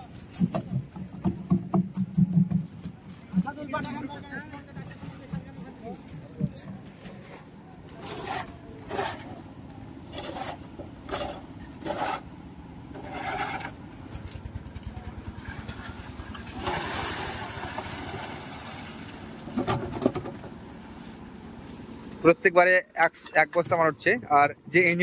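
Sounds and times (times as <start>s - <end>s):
knocks and clanks: 0.3s - 3.9s, 19.5s - 20.6s
diesel engine running: 2.6s - 25.0s.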